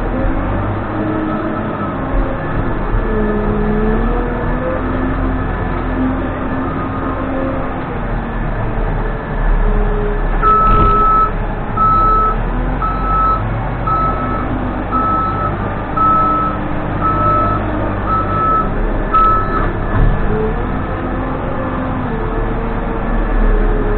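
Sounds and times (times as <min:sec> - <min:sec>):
diesel engine running: 0:00.0 - 0:23.9
reversing alarm beeping: 0:10.4 - 0:19.7.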